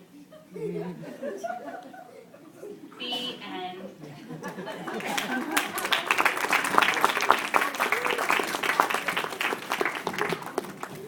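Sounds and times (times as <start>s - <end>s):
people clapping: 4.4s - 11.0s.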